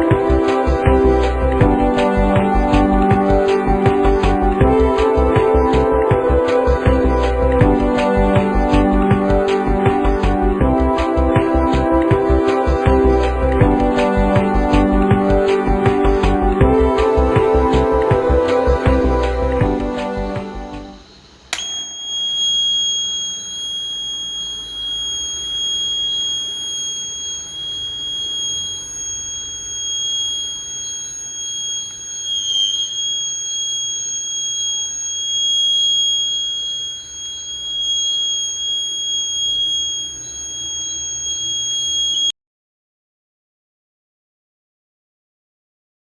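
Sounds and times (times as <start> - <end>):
alarm buzzer high-pitched tone: 20.0 - 42.3.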